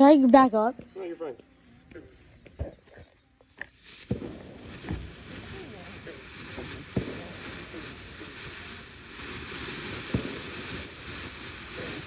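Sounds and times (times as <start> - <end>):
steady outdoor hiss: 0.0 - 12.0
dull firework booms: 4.0 - 12.0.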